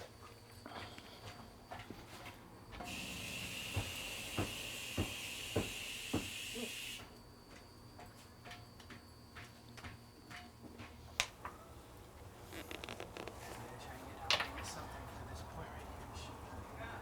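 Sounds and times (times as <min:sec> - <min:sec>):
steady high hiss: 0:02.8 - 0:07.1.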